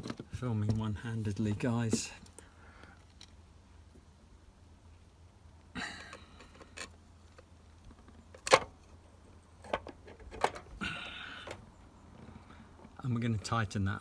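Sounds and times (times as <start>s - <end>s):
metal bolt clicks and knocks: 9.6s - 10.7s.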